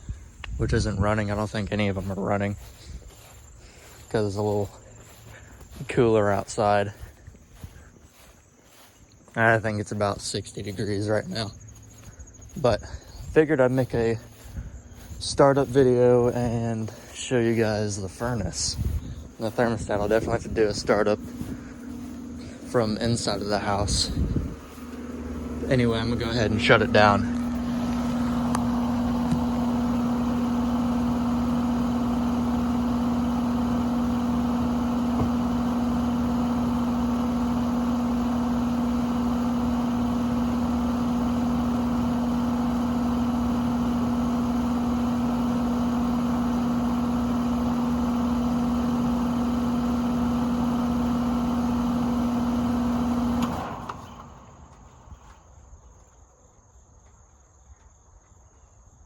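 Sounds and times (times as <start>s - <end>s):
fan motor buzzing: 0.0s - 55.2s
air conditioner unit humming: 17.4s - 45.1s.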